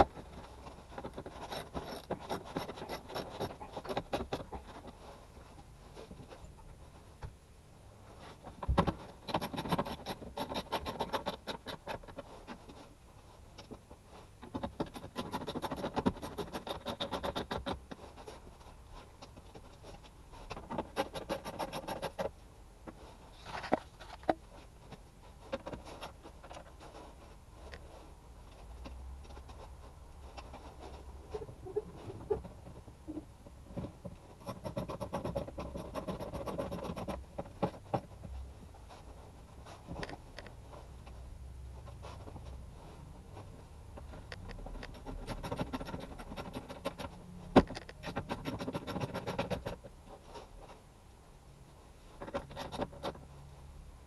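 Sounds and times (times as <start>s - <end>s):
scrapes: 0.0s - 7.2s, 8.0s - 51.0s
rapid clicking or rattling: 44.3s - 49.8s.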